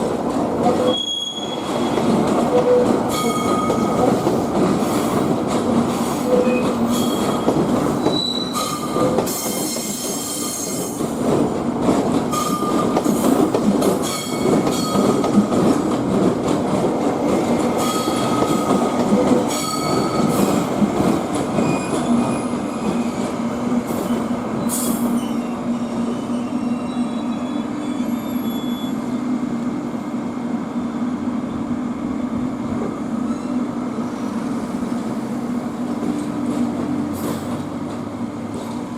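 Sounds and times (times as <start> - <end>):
train wheels squealing: 0.8 - 4.0, 6.2 - 11.0, 19.5 - 20.6, 21.6 - 23.2, 23.9 - 29.2.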